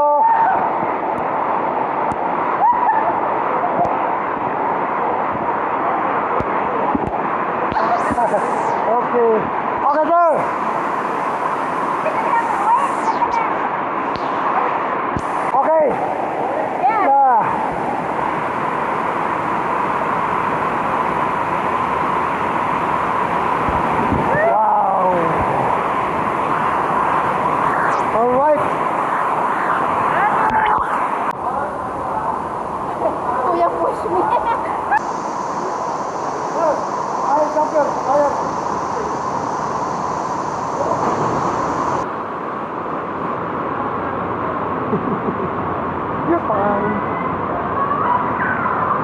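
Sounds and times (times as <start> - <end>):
waterfall rushing water: 0.0 - 44.8
high hiss: 7.7 - 9.4, 10.0 - 31.3, 32.3 - 42.1.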